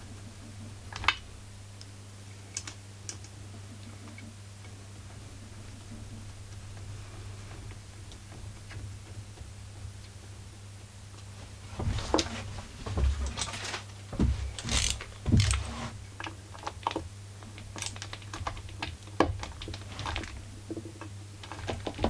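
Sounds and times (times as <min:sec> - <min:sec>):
low steady hum: 0:00.0 - 0:22.0
heavier thumps: 0:11.4 - 0:16.0
hand tools clicking and tapping: 0:14.2 - 0:15.9.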